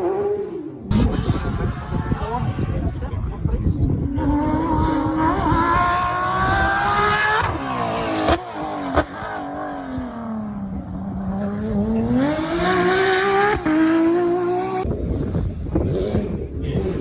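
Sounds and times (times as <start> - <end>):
engine revving: 3.9 - 17.0.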